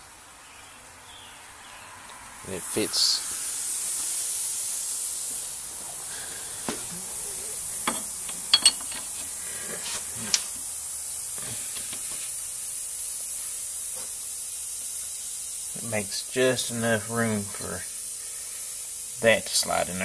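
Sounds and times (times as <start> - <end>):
steady hiss: 0.0 - 20.0
metal parts clicking and knocking: 7.8 - 9.4.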